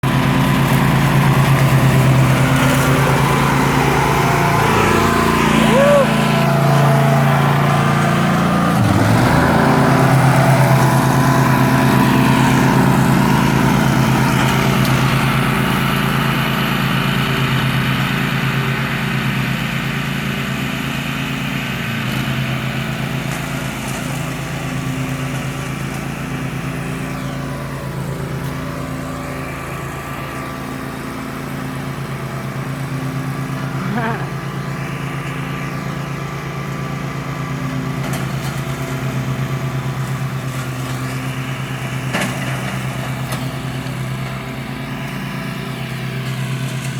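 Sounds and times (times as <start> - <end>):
riding lawnmower engine running: 0.0 - 46.9.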